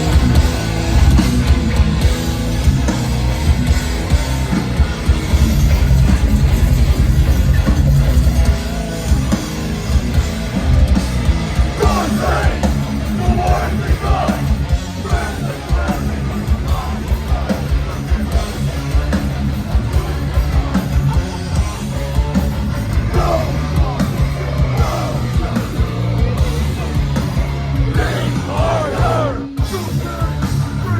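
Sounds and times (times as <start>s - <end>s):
metal band playing loud: 0.0s - 30.9s
vocalist shouting: 11.8s - 16.1s, 27.9s - 29.6s.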